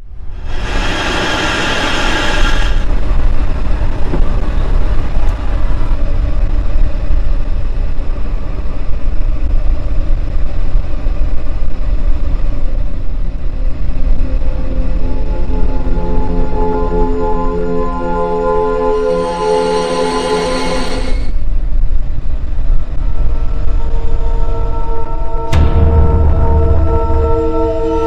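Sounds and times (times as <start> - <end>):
vehicle rumbling: 0.0 - 18.6
loud hiss: 0.3 - 3.0.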